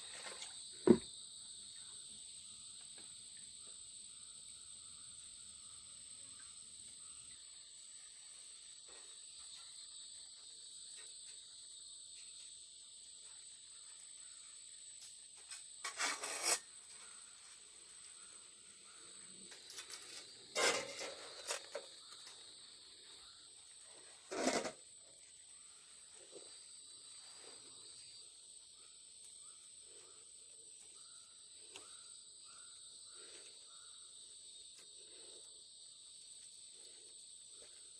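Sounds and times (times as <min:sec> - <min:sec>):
insects chirring: 0:00.0 - 0:37.9
rasping rubbing noises: 0:15.8 - 0:16.6, 0:20.0 - 0:21.9, 0:24.3 - 0:24.8.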